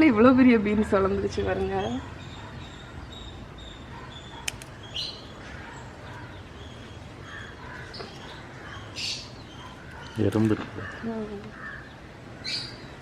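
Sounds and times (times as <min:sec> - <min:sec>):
birds chirping: 0:00.0 - 0:13.0
low outdoor rumble: 0:00.0 - 0:13.0
sharp click: 0:04.4 - 0:04.7.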